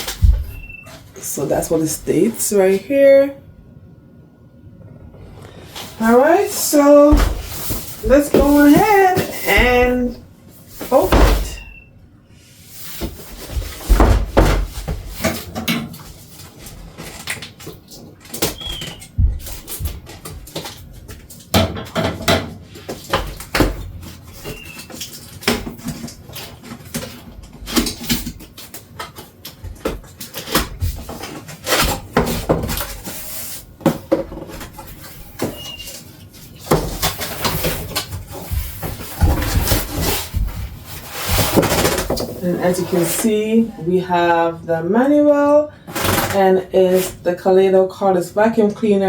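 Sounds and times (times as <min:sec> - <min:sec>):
cardboard and plastic rustling: 0:05.3 - 0:11.8, 0:12.6 - 0:21.6, 0:22.6 - 0:43.4.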